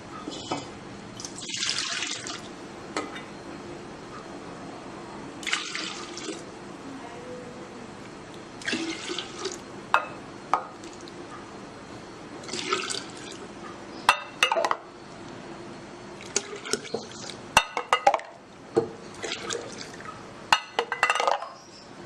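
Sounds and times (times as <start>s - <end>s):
liquid pouring into glasses: 5.4s - 6.4s, 8.6s - 9.6s, 12.4s - 13.4s, 19.1s - 20.1s.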